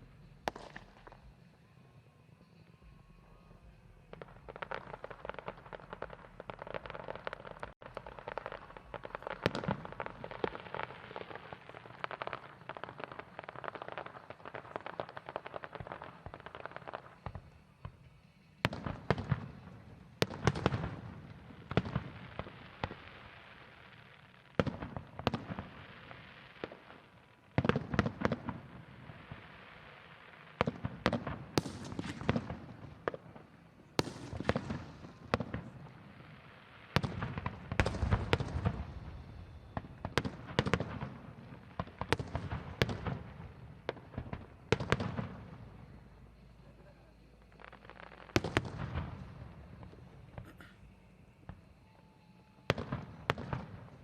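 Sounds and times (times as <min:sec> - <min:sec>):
fireworks crackling: 0:00.0 - 0:54.0.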